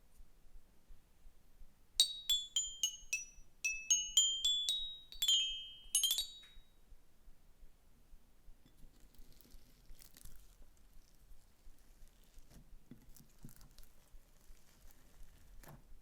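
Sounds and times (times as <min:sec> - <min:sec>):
bell-like chime melody: 0:02.0 - 0:06.7.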